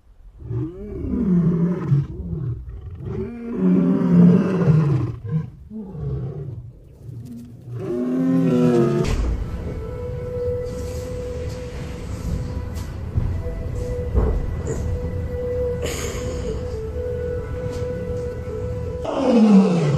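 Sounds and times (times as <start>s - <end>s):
lion roaring: 0.4s - 9.3s, 19.0s - 19.9s.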